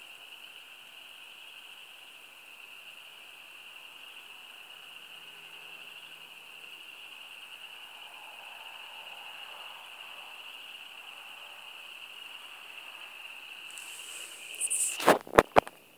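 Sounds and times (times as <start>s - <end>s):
high-pitched trilling drone: 13.7s - 15.0s.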